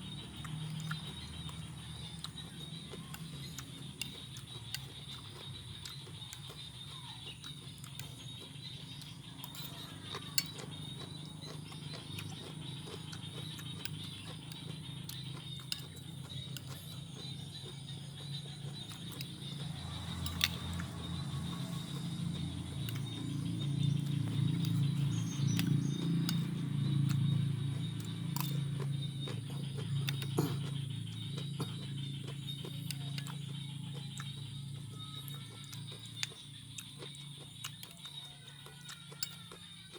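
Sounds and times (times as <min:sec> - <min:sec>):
chewing raw vegetables: 0:00.0 - 0:39.9
sharp crunches: 0:27.1 - 0:33.4.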